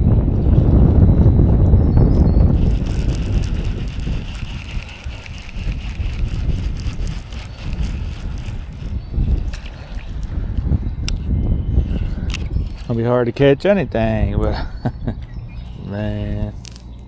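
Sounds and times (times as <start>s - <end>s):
wind rumble on microphone: 0.0s - 17.0s
fishing reel whirring and clicking: 1.4s - 13.6s, 16.3s - 17.0s.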